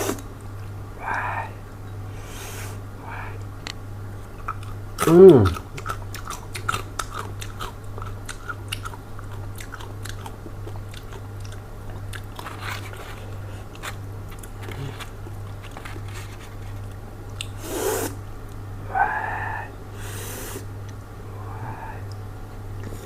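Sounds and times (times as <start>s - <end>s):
steady low hum: 0.0s - 23.0s
chewing crunchy food: 4.2s - 17.6s.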